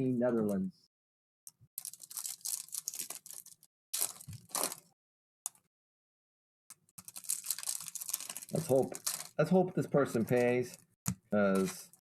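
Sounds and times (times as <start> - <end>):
wrappers crinkling and tearing: 1.8 - 4.9, 7.0 - 9.4, 10.1 - 10.8.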